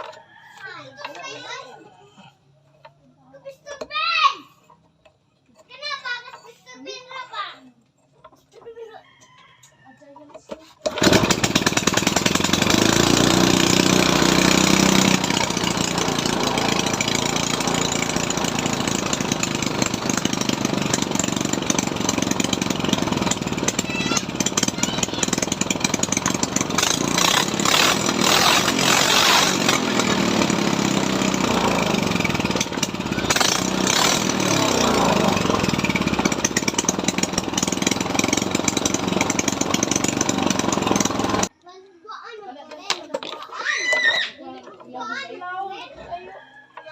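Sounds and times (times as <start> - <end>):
small engine running: 10.6 - 41.6.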